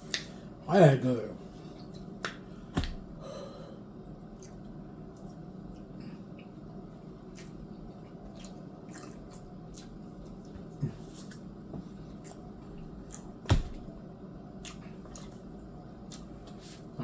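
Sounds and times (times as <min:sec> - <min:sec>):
dull thumps: 0:02.7 - 0:03.1, 0:13.4 - 0:14.0
person chewing food: 0:04.2 - 0:13.9, 0:14.5 - 0:16.9.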